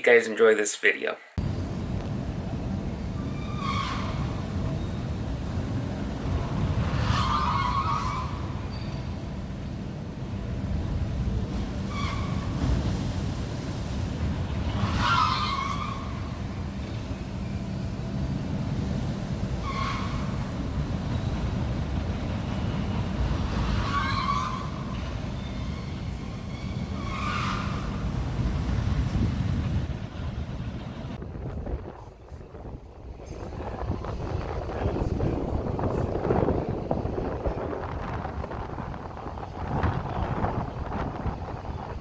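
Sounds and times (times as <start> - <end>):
steady low rumble: 1.4 - 42.0
ship hull squealing against fenders: 3.2 - 5.0, 6.9 - 9.2, 11.7 - 13.0, 14.7 - 16.4, 19.6 - 21.4, 23.6 - 28.2.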